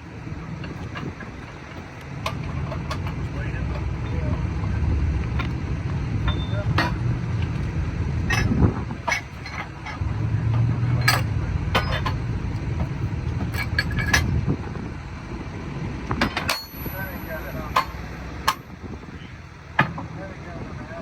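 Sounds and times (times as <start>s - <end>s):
engine running: 0.0s - 21.0s
tools clinking on metal: 13.4s - 14.3s, 16.2s - 18.7s.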